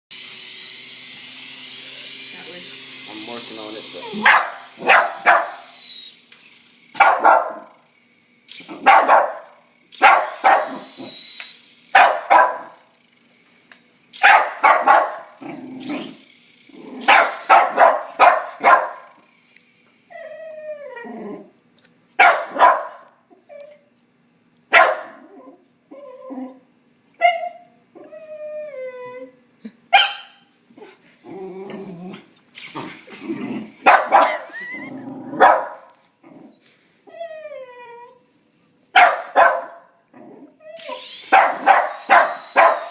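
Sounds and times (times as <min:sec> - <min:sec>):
thin high motor whine: 0:00.1 - 0:20.1, 0:31.0 - 0:35.5, 0:40.7 - 0:42.9
dog whining yelps: 0:04.0 - 0:05.9, 0:07.0 - 0:07.7, 0:10.0 - 0:11.2, 0:14.0 - 0:15.2, 0:17.0 - 0:19.1, 0:20.1 - 0:21.4, 0:22.2 - 0:23.9, 0:24.7 - 0:31.0, 0:33.8 - 0:38.3, 0:39.0 - 0:42.9
dog barking: 0:04.2 - 0:05.6, 0:07.0 - 0:07.7, 0:08.8 - 0:10.8, 0:12.0 - 0:12.8, 0:14.2 - 0:15.3, 0:17.1 - 0:19.1, 0:22.2 - 0:23.1, 0:24.7 - 0:25.2, 0:29.9 - 0:30.4, 0:33.9 - 0:34.4, 0:35.4 - 0:35.9, 0:39.0 - 0:39.9, 0:41.3 - 0:42.9.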